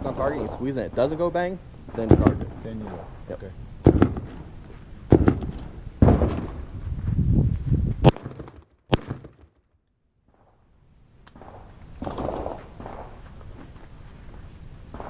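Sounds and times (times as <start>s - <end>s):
gunshots: 0.0s - 6.8s, 8.0s - 9.6s, 11.3s - 13.3s.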